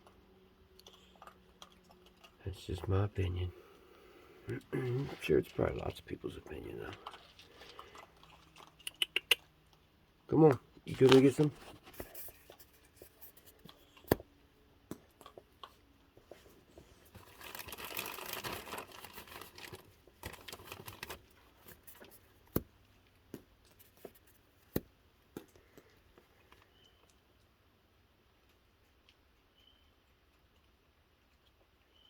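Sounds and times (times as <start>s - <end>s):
rustling and crinkling: 10.8s - 14.3s, 15.1s - 27.5s.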